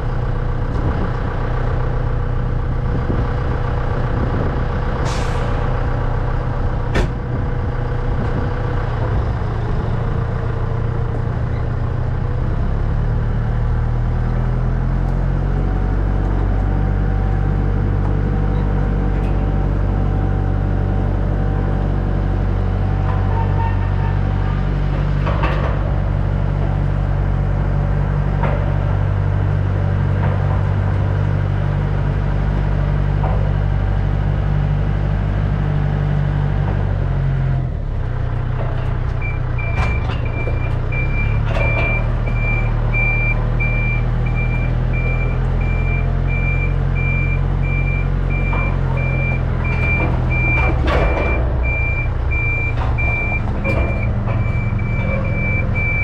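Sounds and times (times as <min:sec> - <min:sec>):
vehicle engine under load: 0:00.0 - 0:56.0
reversing alarm beeping: 0:39.2 - 0:56.0.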